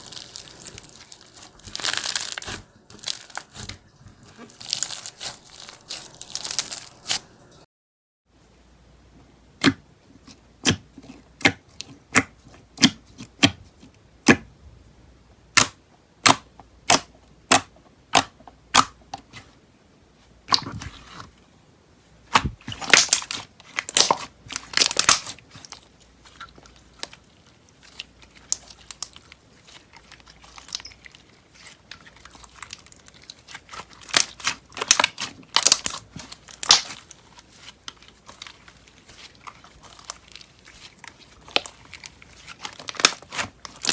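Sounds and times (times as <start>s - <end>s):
slime popping: 0.0s - 7.2s, 22.3s - 27.2s, 27.8s - 43.9s
slime crackling and crunching: 0.0s - 7.3s, 22.3s - 43.9s.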